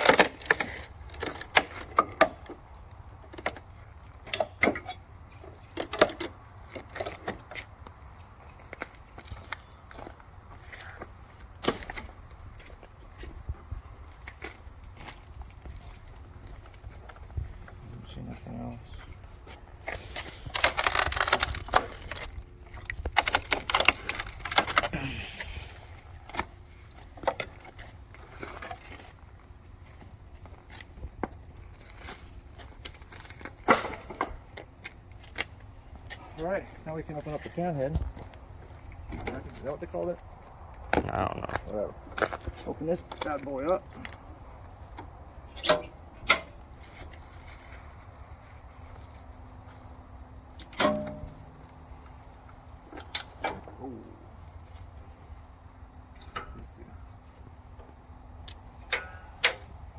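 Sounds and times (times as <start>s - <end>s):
clattering and scraping of unpacking: 0.0s - 2.6s, 18.9s - 40.1s.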